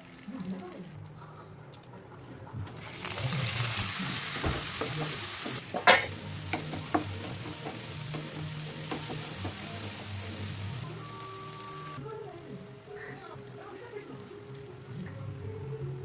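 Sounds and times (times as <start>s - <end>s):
fish sizzling in oil: 2.7s - 15.5s
utensil clinking against pan: 4.4s - 9.6s.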